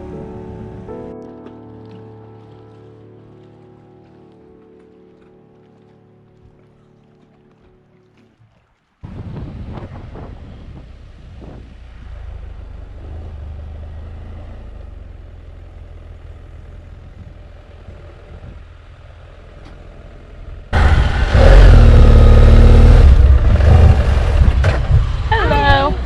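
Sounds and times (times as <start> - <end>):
motorcycle engine running: 9.3 - 26.0.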